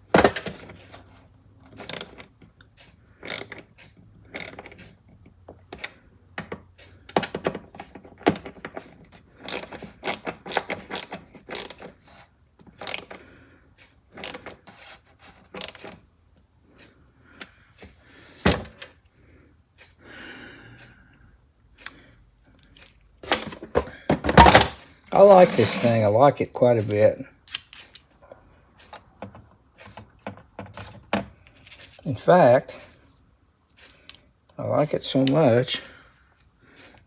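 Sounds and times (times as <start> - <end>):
ratchet screwdriver clicking and rattling: 1.8 - 2.3, 3.2 - 3.6, 4.3 - 4.8, 9.4 - 13.2, 14.2 - 14.9, 15.6 - 16.0
brief scraping: 25.2 - 26.0.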